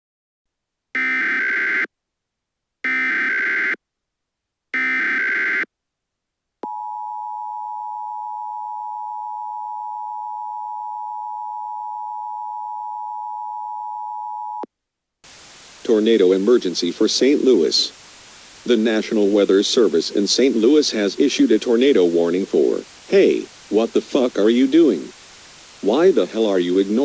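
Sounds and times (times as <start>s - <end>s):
digital data bursts: 15.3s - 27.0s.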